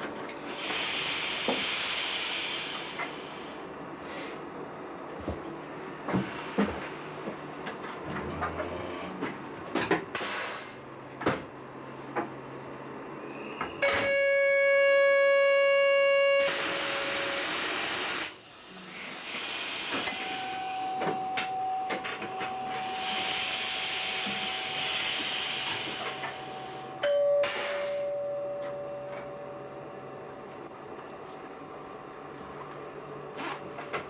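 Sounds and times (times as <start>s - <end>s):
hiss of released air: 0.4s - 4.4s, 10.1s - 10.8s, 16.4s - 20.2s, 22.8s - 26.4s
buzzing warning tone: 13.8s - 17.5s.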